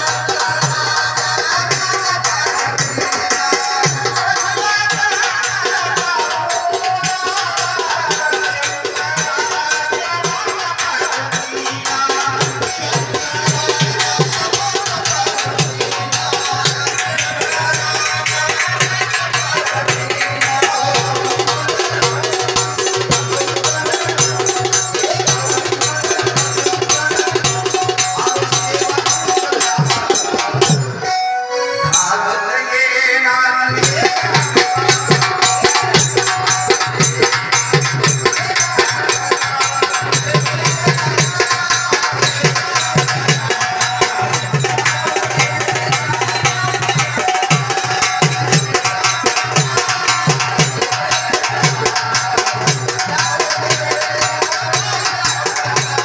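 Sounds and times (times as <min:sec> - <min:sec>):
clacking percussion: 0:00.0 - 0:31.2, 0:31.8 - 0:32.4, 0:33.7 - 0:56.0
hand drums beating fast: 0:00.0 - 0:31.2, 0:33.7 - 0:56.0
hand drum beating: 0:10.2 - 0:31.0.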